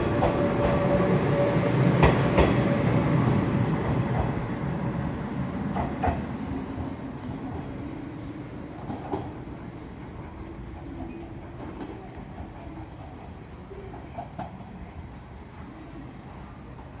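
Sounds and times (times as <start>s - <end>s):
electric train pulling away: 0.0s - 8.9s.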